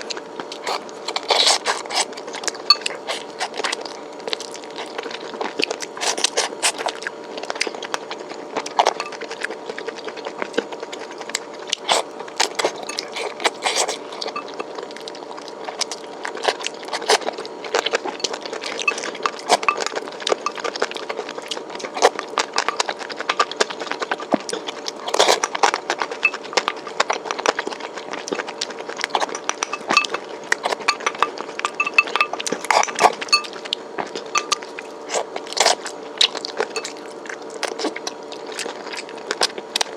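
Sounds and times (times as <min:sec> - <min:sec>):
chewing and crunching food: 0:00.0 - 0:39.9
faint steady hum: 0:00.0 - 0:39.9
utensils scraping dish: 0:11.9 - 0:14.6, 0:18.7 - 0:19.8, 0:29.2 - 0:33.5, 0:34.4 - 0:34.7.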